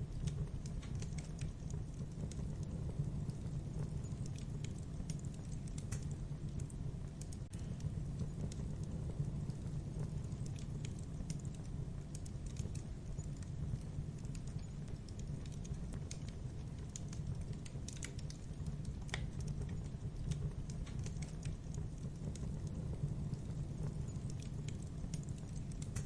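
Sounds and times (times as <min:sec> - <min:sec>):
fire crackling and popping: 0:00.0 - 0:26.0
fire low rumble: 0:00.0 - 0:26.0.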